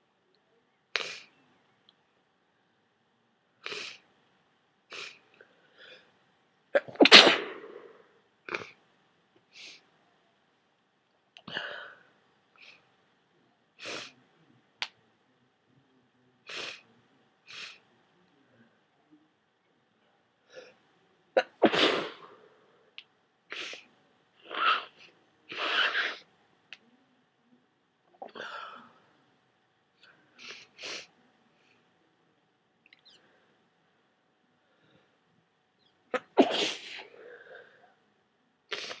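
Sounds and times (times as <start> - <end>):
person sneezing: 6.8 - 8.8, 21.4 - 22.4, 24.5 - 26.2, 36.2 - 37.2, 38.7 - 39.0.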